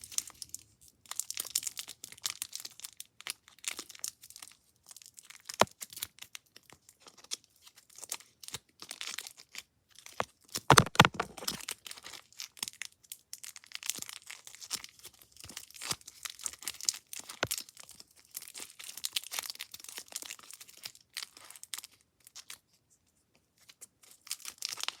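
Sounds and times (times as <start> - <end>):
crinkling and crumpling: 10.2 - 12.8.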